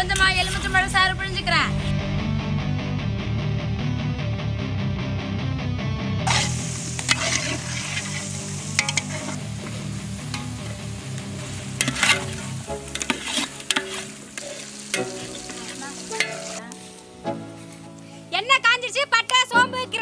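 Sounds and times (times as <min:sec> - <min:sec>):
metal spoon scraping a pot: 0:06.3 - 0:16.9
food sizzling in hot oil: 0:06.3 - 0:17.0.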